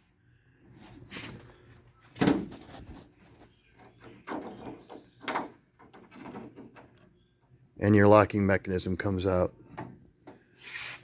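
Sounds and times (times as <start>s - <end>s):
metal knocking and rattling: 3.7s - 7.6s.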